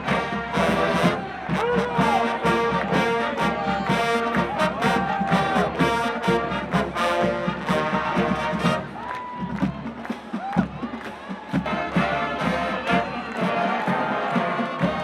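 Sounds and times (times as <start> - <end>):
brass marching band: 0.0 - 15.0
steady drum beat: 0.0 - 15.0.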